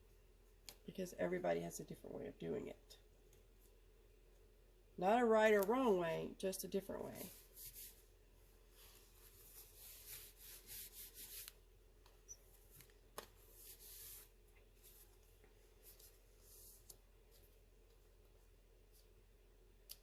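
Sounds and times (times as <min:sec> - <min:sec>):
cardstock rustling and rubbing: 0:08.7 - 0:11.6, 0:12.6 - 0:17.5.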